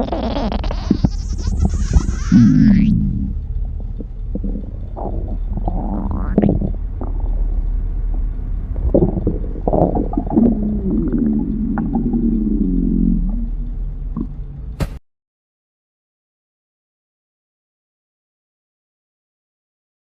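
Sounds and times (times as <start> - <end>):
stomach growling: 0.0 - 14.4.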